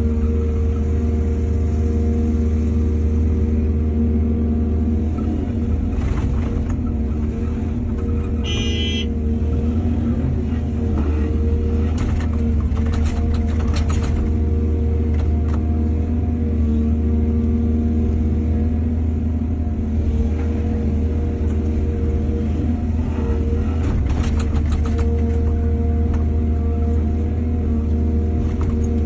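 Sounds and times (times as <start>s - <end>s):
diesel engine running: 0.0s - 29.0s
short high-pitched tone: 8.4s - 9.1s.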